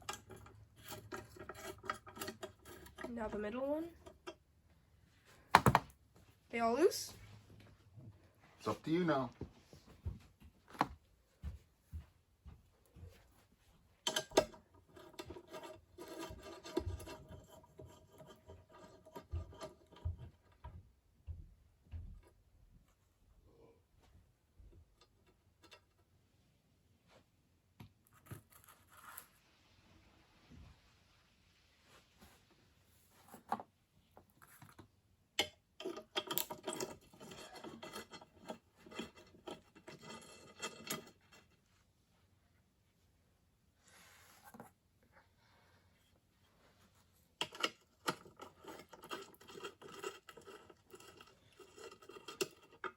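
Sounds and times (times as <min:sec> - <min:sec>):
scraping and rubbing metal parts: 0:00.0 - 0:04.3, 0:35.8 - 0:41.7, 0:47.4 - 0:52.9.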